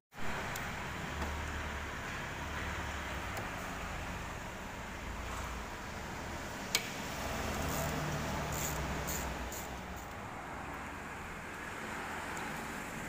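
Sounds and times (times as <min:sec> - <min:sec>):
short hissing sounds: 0:07.6 - 0:10.2.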